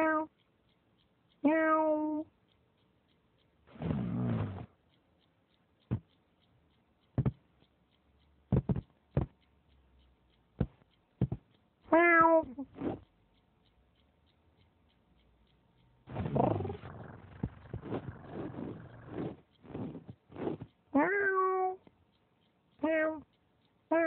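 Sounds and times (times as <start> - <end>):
cat meowing: 0.0 - 0.3, 1.5 - 2.2, 11.9 - 12.5, 21.0 - 21.8, 22.8 - 23.2
sharp taps or knocks: 5.8 - 6.1, 7.1 - 7.5, 8.5 - 9.4, 10.6 - 11.6.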